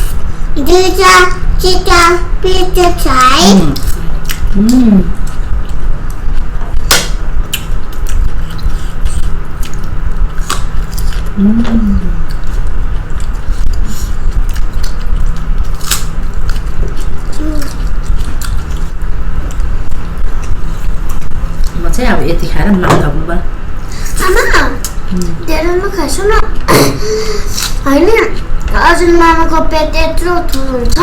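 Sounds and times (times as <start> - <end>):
person humming: 4.5 - 5.2, 11.4 - 12.2.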